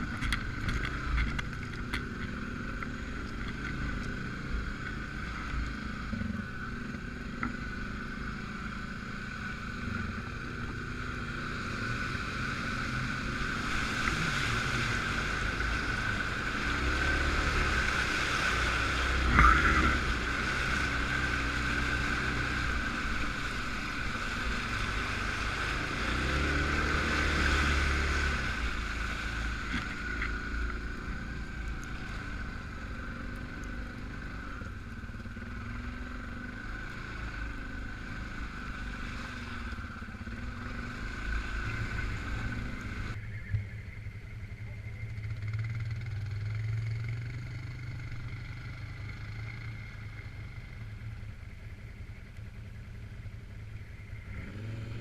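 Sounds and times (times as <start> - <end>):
quad bike engine revving: 0.0 - 43.2, 45.1 - 50.8, 54.2 - 55.0.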